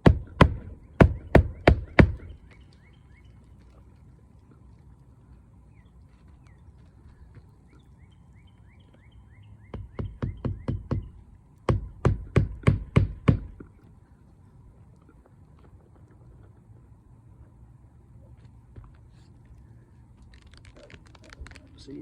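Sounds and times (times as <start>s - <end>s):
hammer driving nails into shingle: 0.0s - 2.4s, 9.7s - 13.7s
faint bird chirps: 0.7s - 4.0s, 5.2s - 11.3s.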